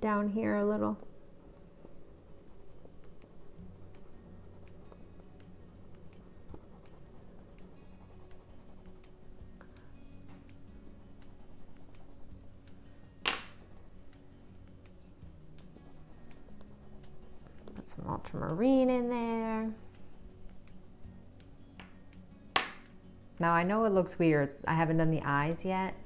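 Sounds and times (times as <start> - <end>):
faint background music: 0.0 - 26.0
wax crayon scratching on paper: 1.8 - 5.0, 6.5 - 9.4, 11.2 - 12.5.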